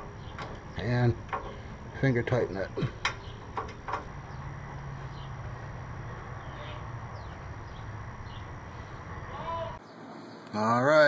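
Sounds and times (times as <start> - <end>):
low background hum: 0.0 - 11.0
faint high chirps: 9.8 - 11.0.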